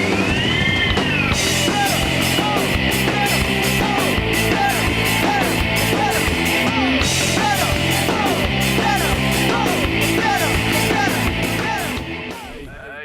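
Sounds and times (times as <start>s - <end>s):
rock music with distorted guitar: 0.0s - 13.0s.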